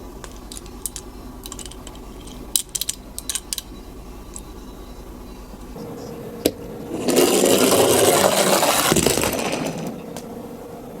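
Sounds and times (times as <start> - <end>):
toy car rattling down track: 0.5 - 3.7, 6.9 - 10.0.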